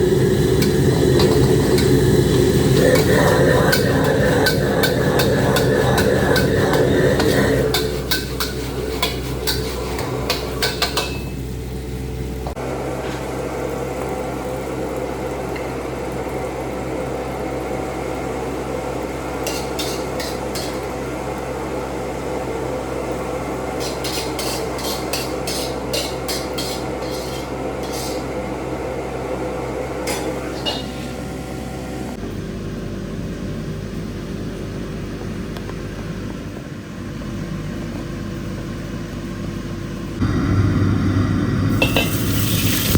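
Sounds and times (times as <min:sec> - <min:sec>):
steady hum: 0:00.0 - 0:12.6, 0:40.1 - 0:42.9
metal spatula clanking on wok: 0:02.9 - 0:11.4, 0:19.4 - 0:20.8, 0:23.8 - 0:28.2.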